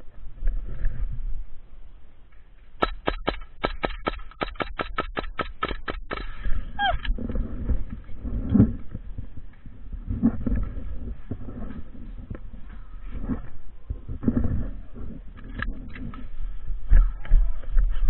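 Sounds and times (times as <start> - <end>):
airsoft gun rapid firing: 2.8 - 6.4.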